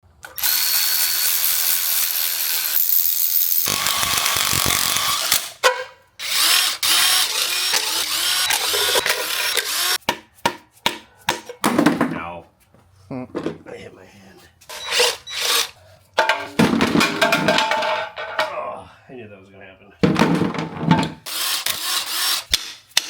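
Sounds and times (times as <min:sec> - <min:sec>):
power tool whirring and ratcheting: 0:00.2 - 0:05.6, 0:06.2 - 0:10.0, 0:14.7 - 0:15.8, 0:21.2 - 0:23.0.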